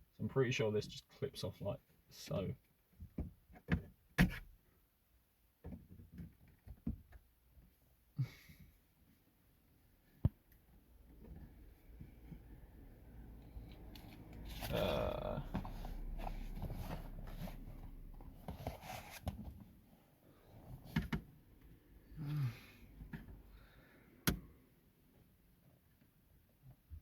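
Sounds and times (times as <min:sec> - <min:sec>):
breathy vocal noise: 0:14.5 - 0:17.0, 0:22.0 - 0:22.9.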